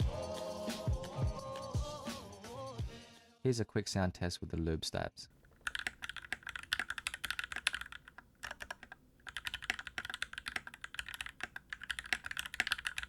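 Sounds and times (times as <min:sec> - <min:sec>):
mechanical keyboard typing: 0:05.5 - 0:13.0.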